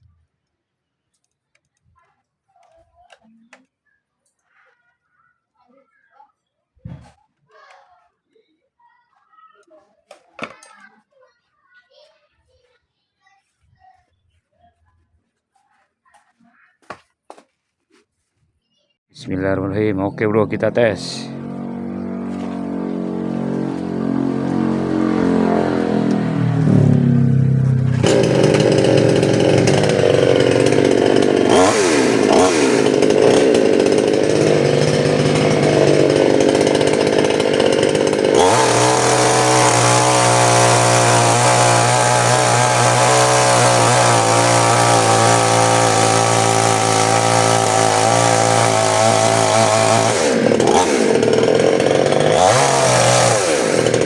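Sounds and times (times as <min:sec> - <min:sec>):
chainsaw engine revving: 0:19.4 - 0:54.0.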